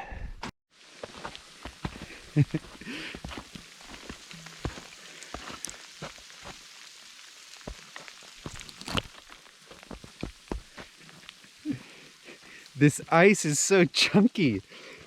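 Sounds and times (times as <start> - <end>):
footsteps crunching on frozen ground: 0.9 - 11.0
snow pellets pattering: 1.7 - 9.6.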